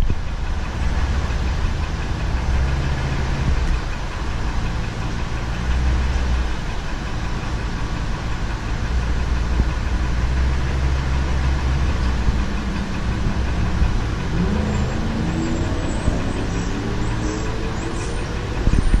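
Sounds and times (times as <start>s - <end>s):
truck engine running: 0.0s - 19.0s.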